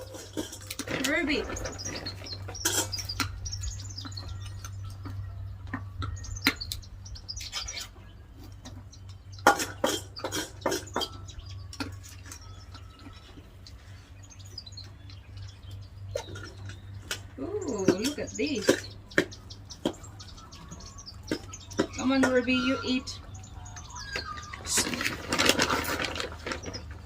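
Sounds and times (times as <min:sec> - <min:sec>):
birds chirping: 0:00.0 - 0:27.0
low steady hum: 0:00.0 - 0:27.0
sharp knocks and clatter: 0:08.4 - 0:12.4.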